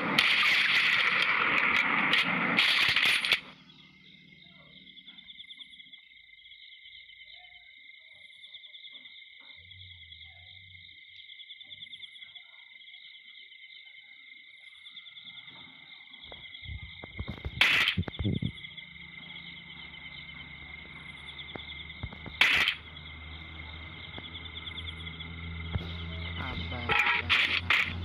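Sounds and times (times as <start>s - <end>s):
insect chorus trilling: 0.0s - 28.0s
low steady hum: 15.2s - 28.0s
short noisy bursts: 22.0s - 22.9s.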